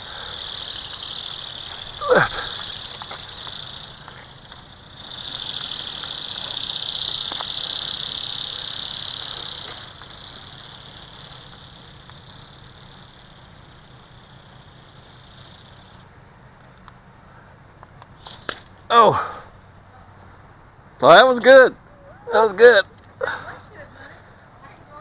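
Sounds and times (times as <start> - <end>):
small electric motor whining: 0.0 - 16.1.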